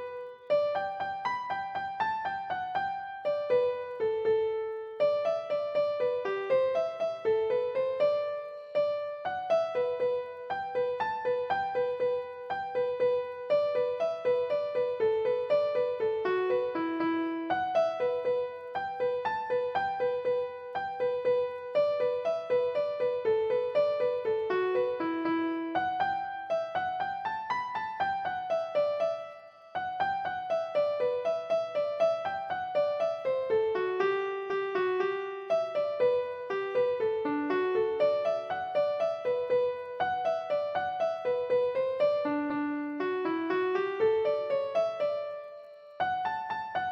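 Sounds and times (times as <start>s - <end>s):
gentle piano melody: 0.0s - 46.9s.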